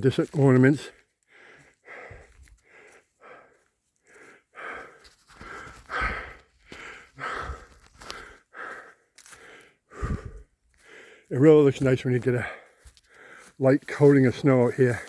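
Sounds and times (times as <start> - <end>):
person breathing hard: 1.2 - 11.3, 12.4 - 13.6.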